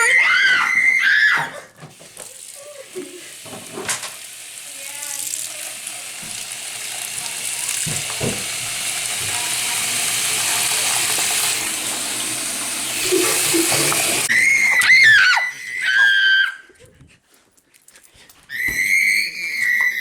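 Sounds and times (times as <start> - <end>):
tap water running into sink: 1.8 - 14.9.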